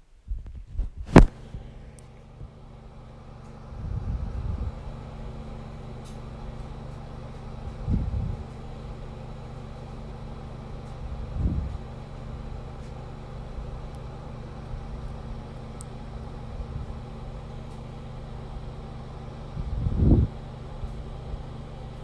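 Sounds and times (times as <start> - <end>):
heartbeat and breathing rumble: 0.2 - 1.7, 3.7 - 4.9.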